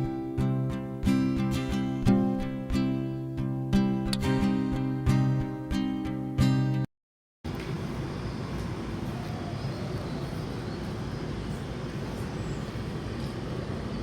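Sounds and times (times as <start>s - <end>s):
low ambient background noise: 7.5s - 14.0s.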